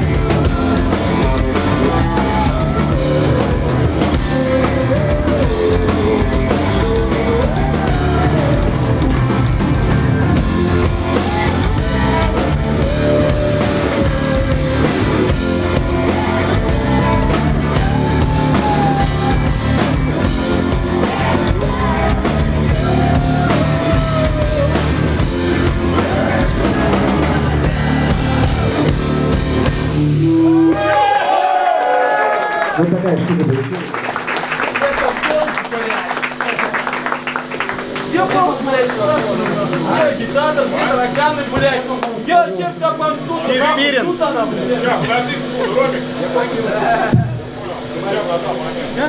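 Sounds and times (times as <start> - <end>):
person singing: 0.0 - 9.1, 10.6 - 29.0
rock band playing live: 0.0 - 31.2, 33.5 - 42.3.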